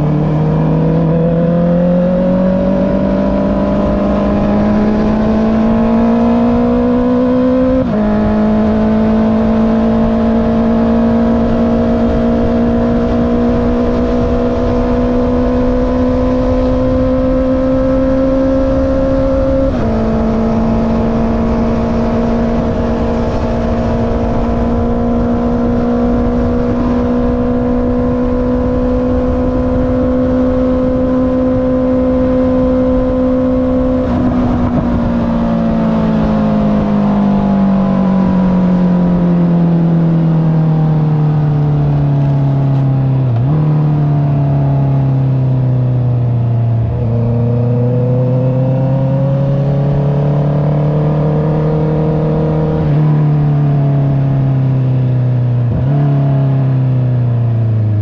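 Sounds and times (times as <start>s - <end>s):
wind rush: 0.0s - 45.4s
motorcycle engine revving: 0.0s - 58.0s.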